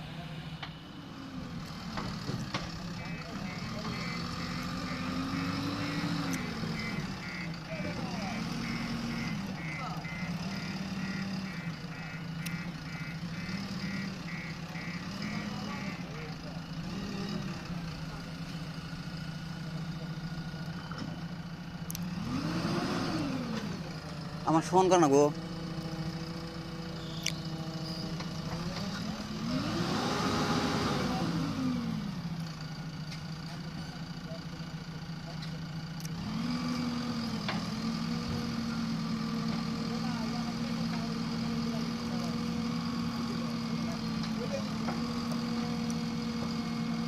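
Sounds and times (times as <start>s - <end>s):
diesel engine running: 0.0s - 47.0s
reversing alarm beeping: 3.0s - 7.5s, 8.2s - 16.0s.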